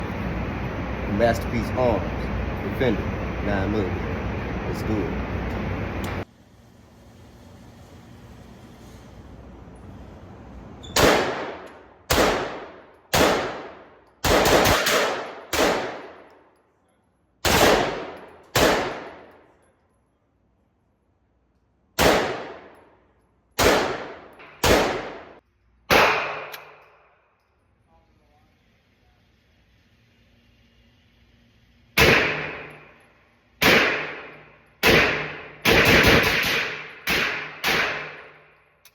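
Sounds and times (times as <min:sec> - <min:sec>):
gunfire burst: 0:11.0 - 0:16.2, 0:17.4 - 0:19.3, 0:22.0 - 0:22.7, 0:23.6 - 0:25.3, 0:32.0 - 0:32.7, 0:33.6 - 0:38.3
pistol shots with echo: 0:11.0 - 0:16.2, 0:17.4 - 0:19.3, 0:22.0 - 0:22.8, 0:23.6 - 0:26.8, 0:32.0 - 0:32.8, 0:33.6 - 0:38.4.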